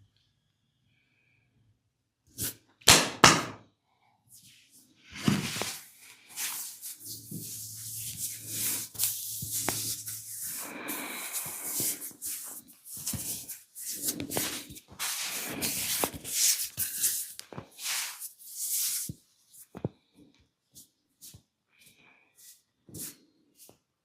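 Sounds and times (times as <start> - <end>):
hands rubbing skin: 5.2 - 19.8, 22.4 - 23.7.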